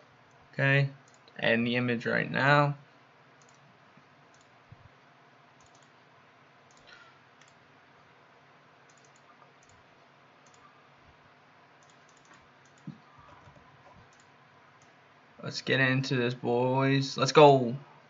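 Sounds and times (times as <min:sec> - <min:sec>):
computer mouse clicks: 0:01.0 - 0:01.4, 0:03.4 - 0:03.7, 0:04.3 - 0:04.6, 0:05.6 - 0:06.0, 0:06.7 - 0:07.6, 0:08.9 - 0:09.8, 0:10.4 - 0:10.7, 0:11.8 - 0:15.0.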